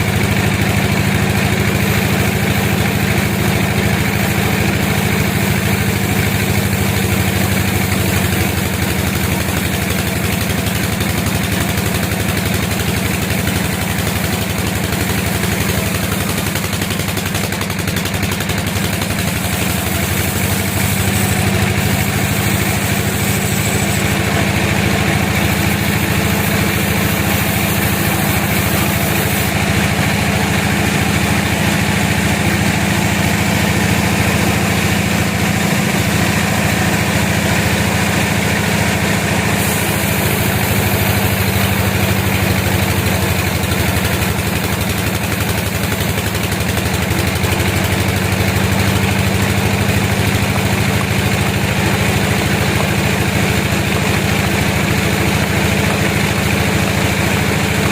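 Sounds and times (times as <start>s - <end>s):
sawmill machinery drone: 0.0s - 57.9s.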